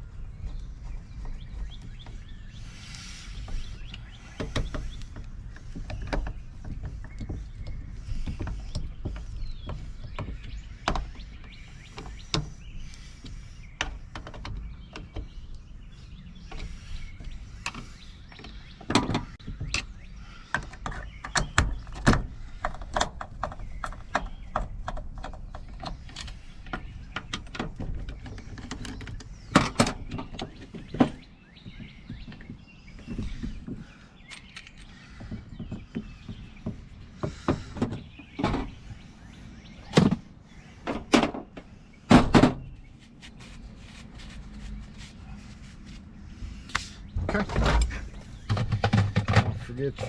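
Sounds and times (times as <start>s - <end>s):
small metal lock parts clicking: 34.3s - 34.9s.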